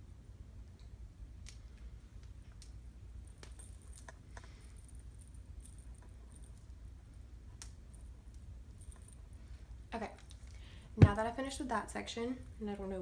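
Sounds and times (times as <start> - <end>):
low steady hum: 0.0 - 13.0
small clicks and rustles: 0.7 - 9.3.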